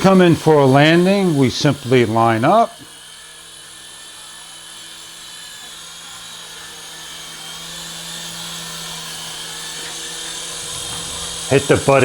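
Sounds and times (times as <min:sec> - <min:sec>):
rc helicopter rotor whine: 0:00.0 - 0:12.0.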